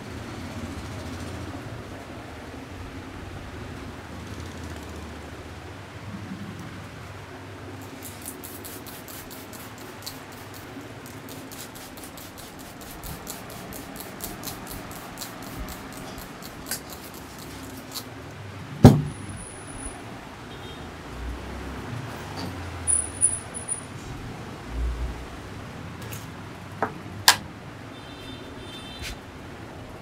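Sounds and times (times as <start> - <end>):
loud slap-like thump: 18.8 - 19.2.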